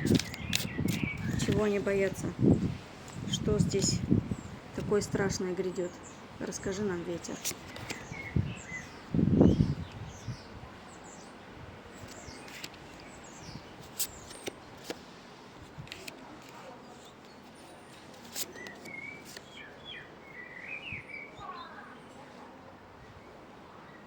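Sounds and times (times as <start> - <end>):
small birds chirping: 0.0 - 22.3
steady low hiss: 0.0 - 24.0
sharp clicks: 0.1 - 1.6.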